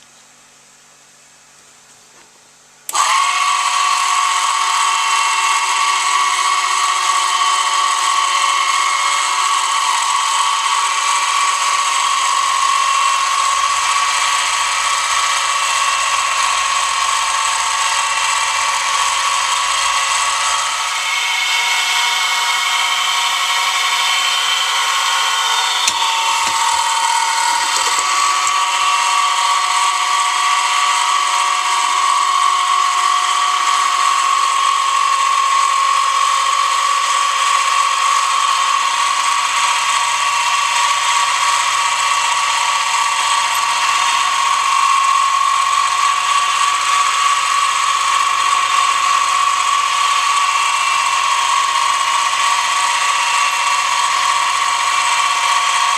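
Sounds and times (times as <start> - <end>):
milling machine whining: 2.9 - 55.9
sharp click: 25.8 - 28.6.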